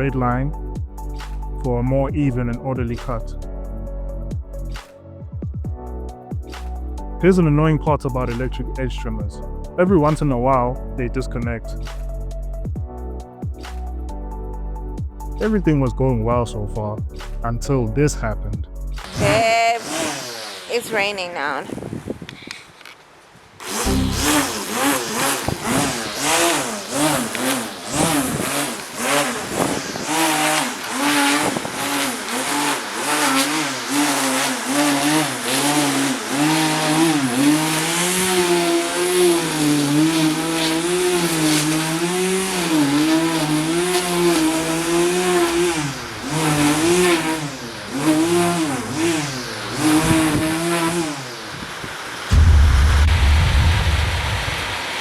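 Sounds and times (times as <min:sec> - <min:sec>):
edge trimmer motor whine: 0:19.0 - 0:21.2, 0:23.6 - 0:52.4.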